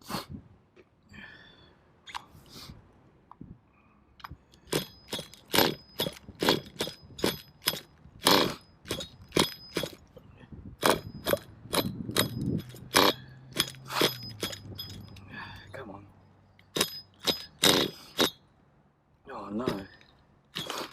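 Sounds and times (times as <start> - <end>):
pull starter rasping: 4.6 - 10.0, 10.8 - 15.3.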